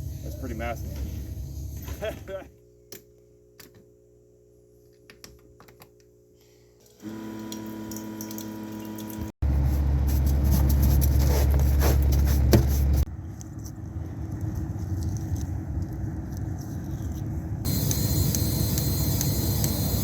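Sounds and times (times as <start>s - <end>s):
diesel engine rumbling: 9.4s - 20.0s
steady hum: 17.4s - 20.0s.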